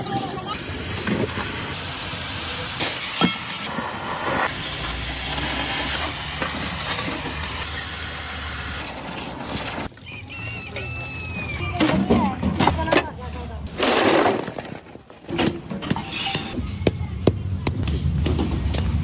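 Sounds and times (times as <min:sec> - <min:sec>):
steady hissing: 0:00.5 - 0:09.9.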